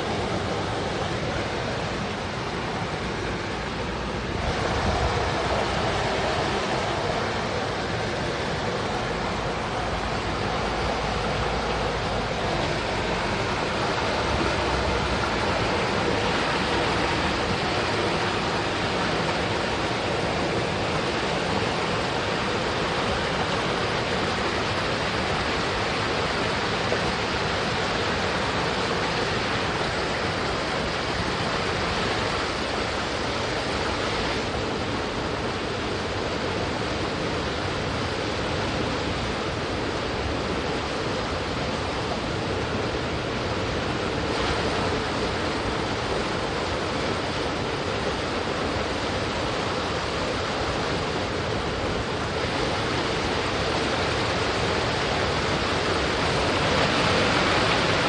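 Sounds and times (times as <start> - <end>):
stream rushing over rocks: 32.6 - 58.0.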